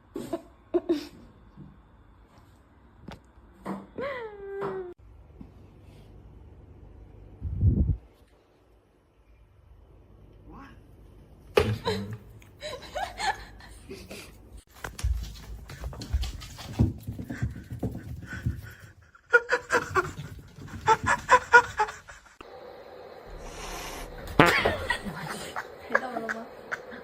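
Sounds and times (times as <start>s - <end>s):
people laughing: 19.2s - 22.4s, 24.3s - 27.0s.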